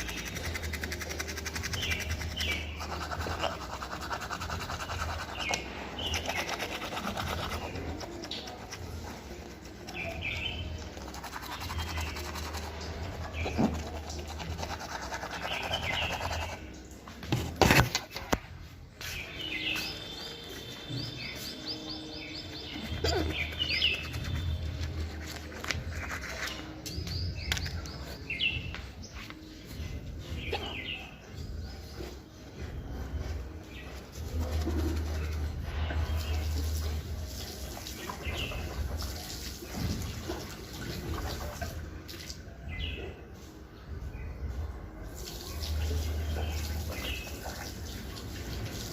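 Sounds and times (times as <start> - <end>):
toothbrush scrubbing teeth: 0.0 - 16.7, 22.3 - 26.8
birds chirping: 14.8 - 41.3.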